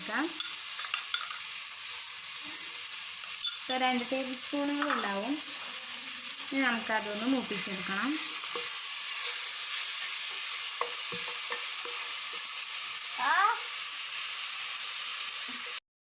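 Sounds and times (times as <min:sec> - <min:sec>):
paste sizzling in hot oil: 0:00.0 - 0:15.8
spoon knocking on pan: 0:10.6 - 0:12.5.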